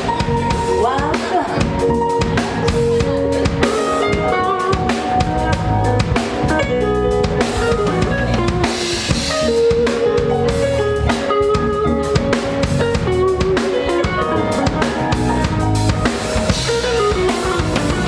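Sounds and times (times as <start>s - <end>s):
band music: 0.0s - 18.0s
drum kit steady beat: 0.0s - 18.0s
guitar melody: 0.0s - 18.0s.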